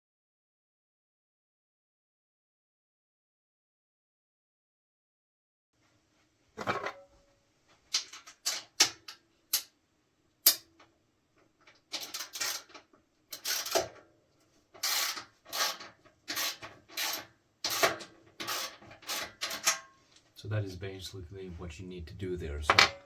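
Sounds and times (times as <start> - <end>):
tool clicking on metal: 10.4 - 10.7, 14.8 - 19.8
screw being loosened scraping: 11.9 - 13.9, 14.8 - 19.8.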